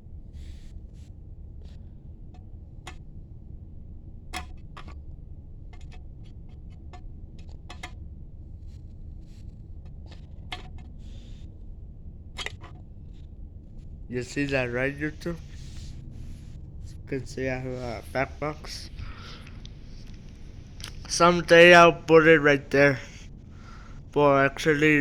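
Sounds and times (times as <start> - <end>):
steady low hum: 0.0 - 25.0
light clicks of small objects: 14.2 - 21.4.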